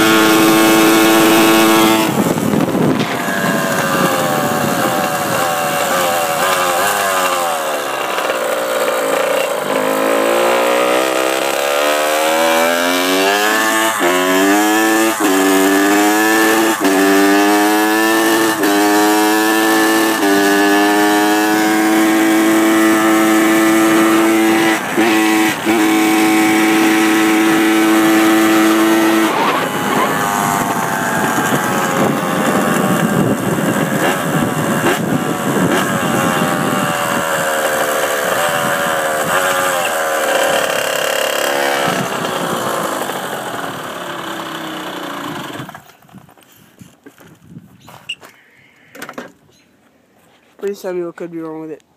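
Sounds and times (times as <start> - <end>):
dirt bike engine accelerating: 0.0 - 47.5.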